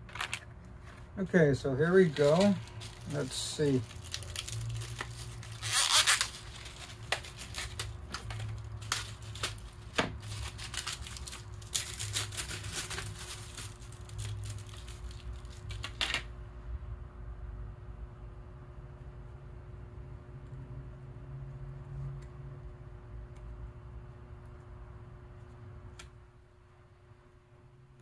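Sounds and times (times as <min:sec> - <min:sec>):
crinkling rip: 0:00.0 - 0:00.5, 0:01.9 - 0:16.3.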